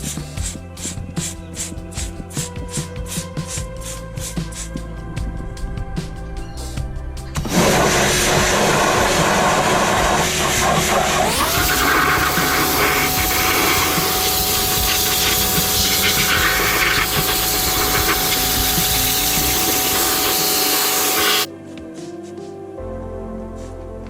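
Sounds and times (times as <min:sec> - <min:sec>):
background music: 0:00.0 - 0:24.0
power drill scrubbing a wheel: 0:07.4 - 0:21.5.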